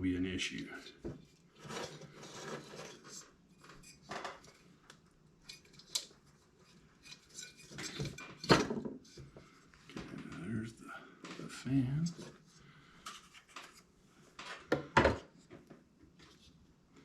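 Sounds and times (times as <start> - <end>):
metal tools clinking and scraping: 1.6 - 4.7, 7.0 - 8.7.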